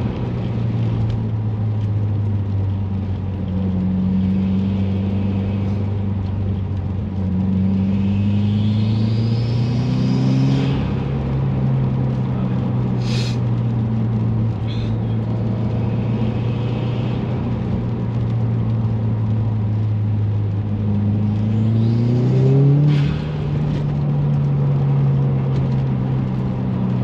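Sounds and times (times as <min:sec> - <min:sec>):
car engine accelerating: 0:00.0 - 0:27.0
short hiss: 0:13.0 - 0:13.4.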